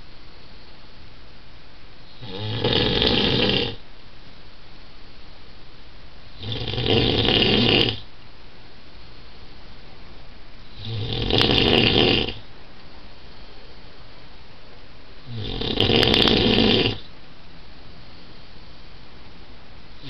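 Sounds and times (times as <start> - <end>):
man snoring loudly: 2.2 - 3.8, 6.4 - 8.0, 10.8 - 12.4, 15.3 - 17.0
quiet breathing: 8.8 - 11.0, 12.3 - 15.5, 16.3 - 20.0.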